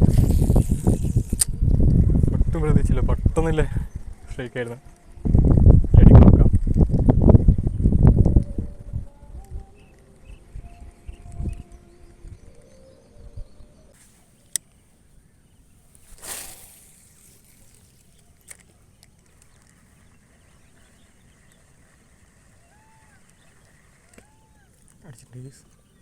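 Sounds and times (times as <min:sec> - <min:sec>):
bird calls: 0:09.7 - 0:26.0.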